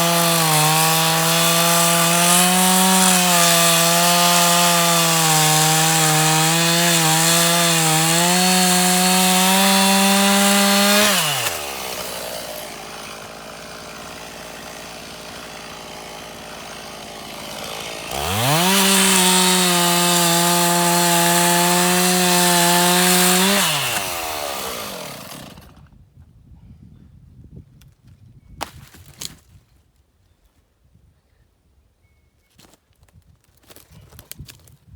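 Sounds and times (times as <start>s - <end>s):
chainsaw idling and revving: 0.0s - 25.9s.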